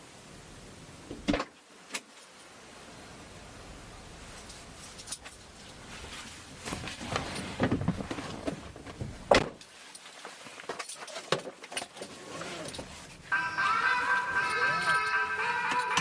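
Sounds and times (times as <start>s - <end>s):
rustling and handling noises: 4.3s - 16.0s.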